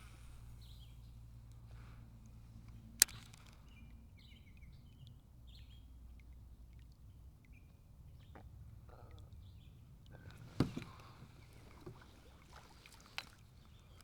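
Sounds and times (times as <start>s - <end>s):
faint bird chirps: 0.0s - 2.4s.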